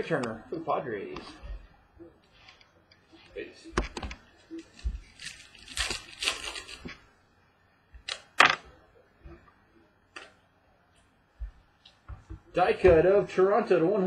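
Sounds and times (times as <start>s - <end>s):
cards rustling: 3.8s - 7.0s.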